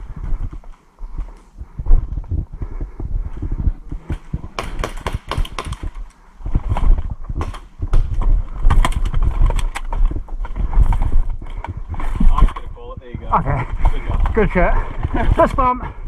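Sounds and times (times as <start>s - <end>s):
low rumble: 0.0s - 16.0s
sharp clicks and knocks: 4.0s - 12.7s.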